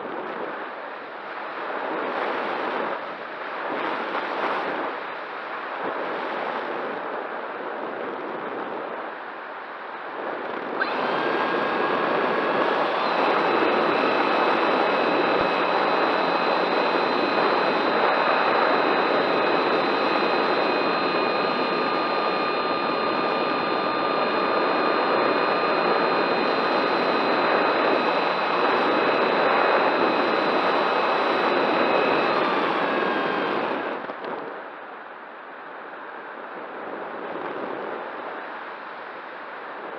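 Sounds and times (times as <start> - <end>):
wind noise on microphone: 0.0 - 39.9
electric motor whine: 10.6 - 34.2.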